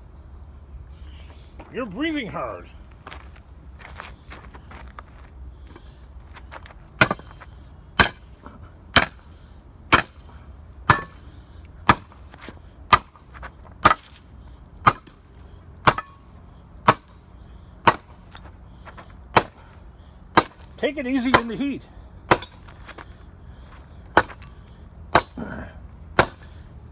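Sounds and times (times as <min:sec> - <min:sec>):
hammer striking metal: 0:07.0 - 0:07.4, 0:08.0 - 0:11.3, 0:11.9 - 0:12.3, 0:12.9 - 0:17.3, 0:17.9 - 0:18.4, 0:19.4 - 0:19.7, 0:20.4 - 0:21.6, 0:22.3 - 0:23.0, 0:24.2 - 0:25.6, 0:26.2 - 0:26.8.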